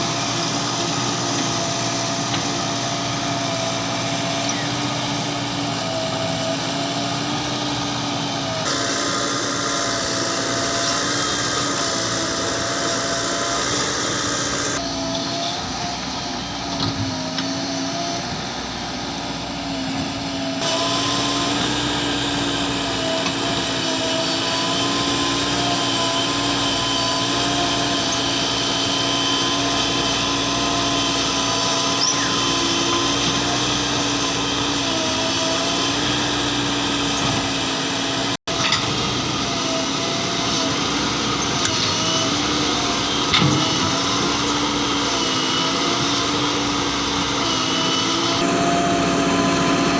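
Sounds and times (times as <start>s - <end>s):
diesel engine running under load: 0.0s - 49.9s.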